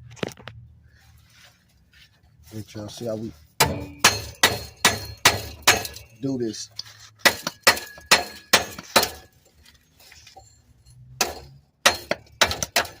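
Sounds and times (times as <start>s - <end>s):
hammer striking metal: 3.6s - 6.2s, 7.2s - 9.3s, 11.2s - 13.0s.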